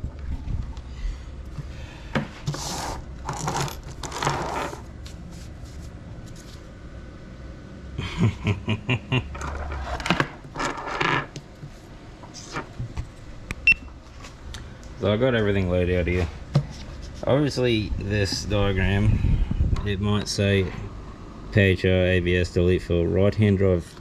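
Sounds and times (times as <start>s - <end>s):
packaging rustling and scraping: 2.4s - 6.7s.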